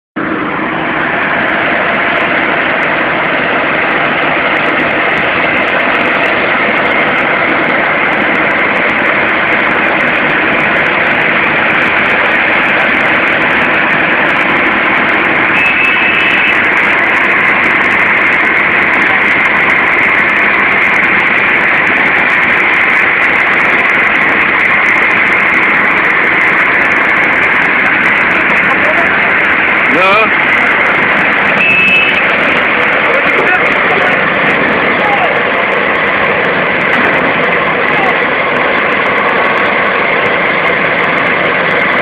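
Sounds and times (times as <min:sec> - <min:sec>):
machinery engines running: 0:00.2 - 0:42.0
brief high tone: 0:15.5 - 0:16.6, 0:31.4 - 0:32.3.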